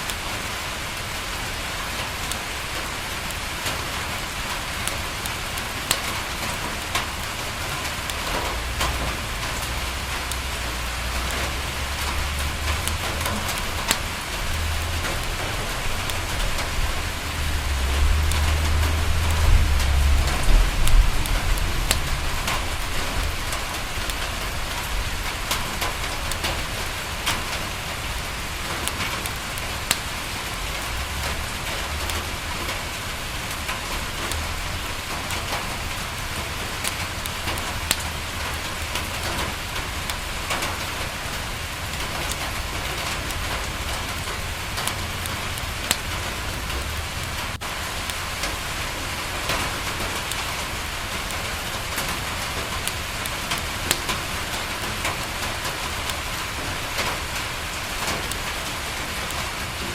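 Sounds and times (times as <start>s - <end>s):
rain on a window: 0.0s - 59.9s
low rumble: 8.6s - 25.1s.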